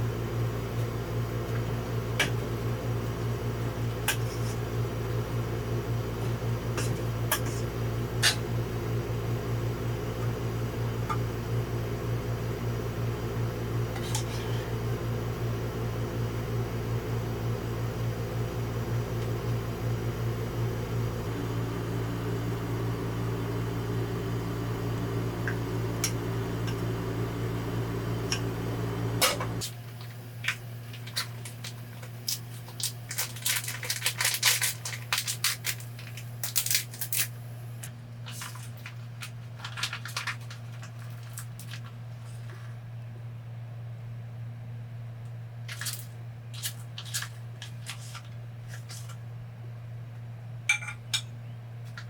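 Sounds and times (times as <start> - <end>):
appliance motor humming: 0.0 - 42.5
rustling handling noises: 30.9 - 37.3, 38.2 - 42.8, 45.7 - 49.2.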